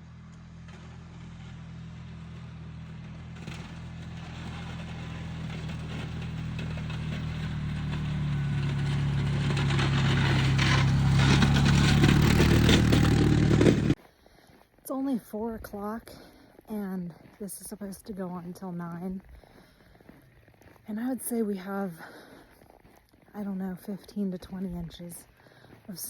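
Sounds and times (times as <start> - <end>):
vehicle engine approaching: 0.0 - 14.0.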